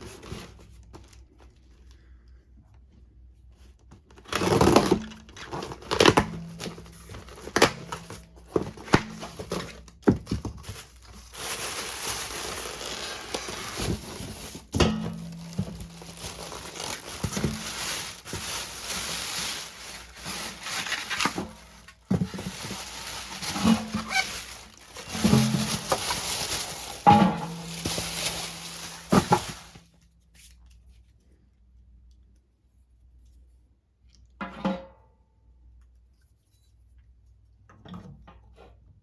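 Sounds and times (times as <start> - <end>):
packaging crinkling and tearing: 4.0 - 30.0.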